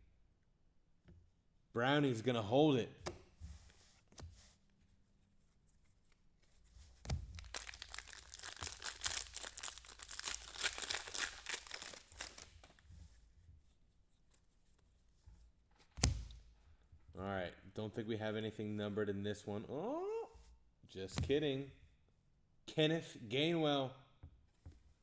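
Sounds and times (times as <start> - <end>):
card pack wrapper tearing and crinkling: 7.1 - 12.8.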